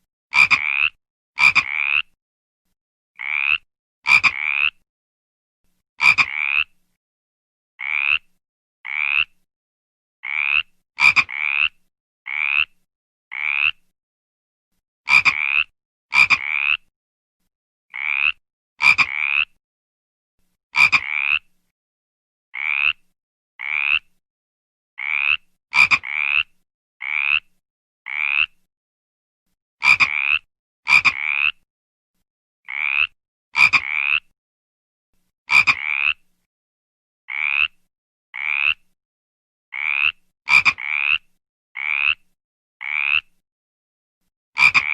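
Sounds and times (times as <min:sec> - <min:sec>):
frog croaking: 0:00.4 - 0:02.2, 0:03.2 - 0:04.8, 0:06.0 - 0:06.8, 0:07.8 - 0:08.3, 0:08.9 - 0:09.4, 0:10.2 - 0:13.8, 0:15.1 - 0:16.8, 0:17.9 - 0:19.6, 0:20.8 - 0:21.5, 0:22.6 - 0:23.0, 0:23.6 - 0:24.1, 0:25.0 - 0:27.5, 0:28.1 - 0:28.6, 0:29.8 - 0:31.6, 0:32.7 - 0:34.2, 0:35.5 - 0:36.2, 0:37.3 - 0:37.8, 0:38.4 - 0:38.8, 0:39.8 - 0:42.2, 0:42.8 - 0:43.3, 0:44.6 - 0:44.9.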